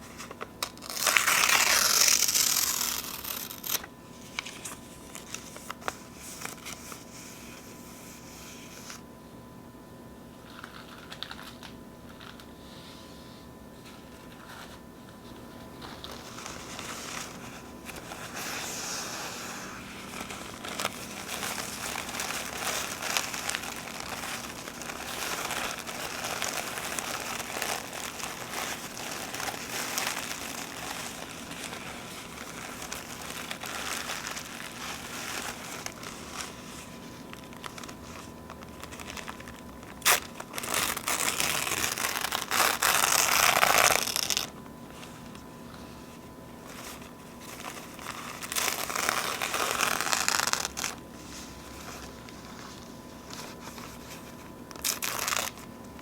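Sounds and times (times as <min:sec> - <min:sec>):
paper napkins crinkling: 0:00.0 - 0:09.1, 0:10.4 - 0:56.0
paper tearing: 0:00.3 - 0:06.8, 0:15.9 - 0:44.5, 0:46.7 - 0:51.0, 0:51.8 - 0:55.7.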